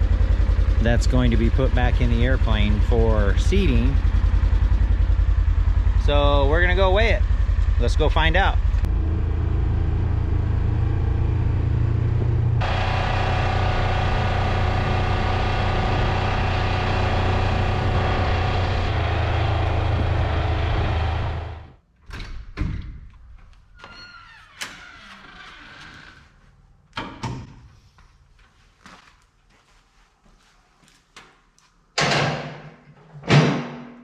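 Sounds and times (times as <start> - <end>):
vehicle engine running: 0.0 - 21.8
door clunks and knocks: 22.1 - 23.1.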